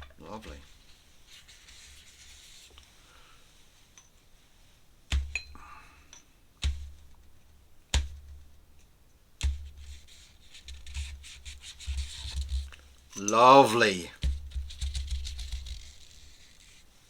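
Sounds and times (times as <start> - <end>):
light taps and rubbing: 9.4 - 13.2, 14.2 - 16.9.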